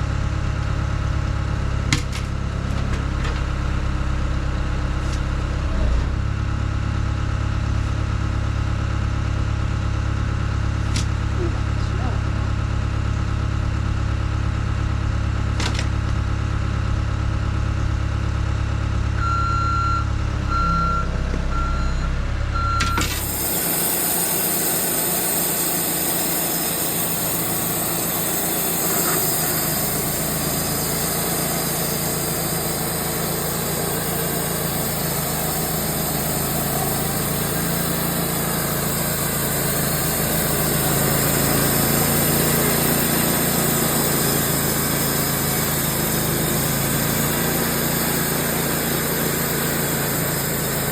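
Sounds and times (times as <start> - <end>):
sawmill engine running: 0.0 - 50.9
short electronic beeps: 19.2 - 50.6
sawmill hissing while sawing log: 23.0 - 50.9.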